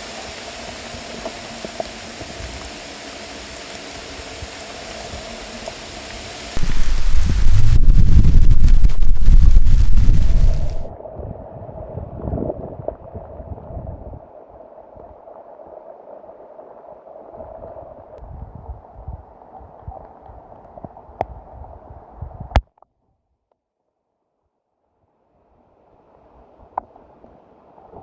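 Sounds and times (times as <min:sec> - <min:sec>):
muffled storm wind gusting: 0:06.6 - 0:10.9.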